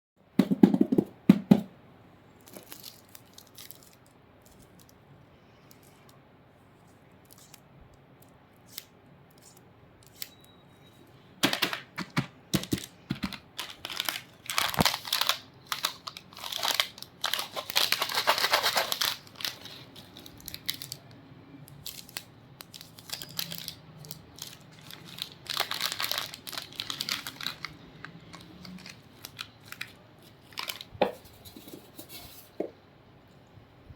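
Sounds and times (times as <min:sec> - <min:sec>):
plastic wrappers crinkling: 0:02.4 - 0:05.0, 0:12.6 - 0:32.0.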